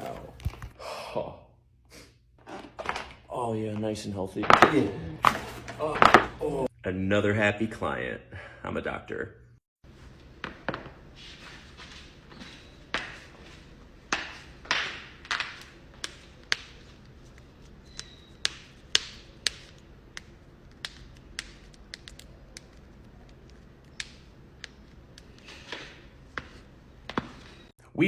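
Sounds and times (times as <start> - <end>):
joints cracking: 12.3 - 27.7.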